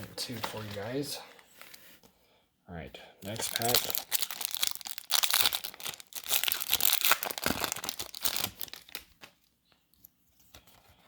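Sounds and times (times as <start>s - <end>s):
foil wrapper crinkling and tearing: 3.3s - 9.3s.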